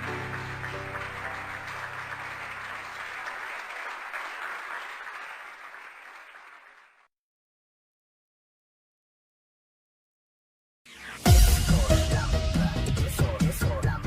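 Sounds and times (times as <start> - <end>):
background music held notes: 0.0 - 3.3, 11.0 - 14.0.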